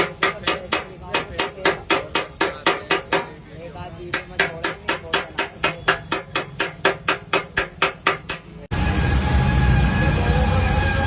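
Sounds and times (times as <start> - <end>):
hammer blows on sheet metal: 0.0 - 3.4
vehicle noise rumble: 7.9 - 11.0.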